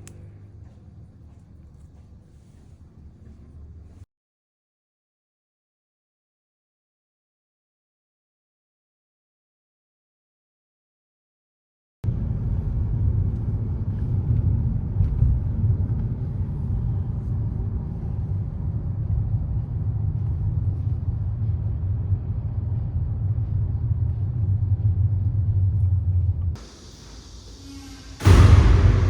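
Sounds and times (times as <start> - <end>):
steady low rumble: 0.0 - 4.1, 12.0 - 29.0.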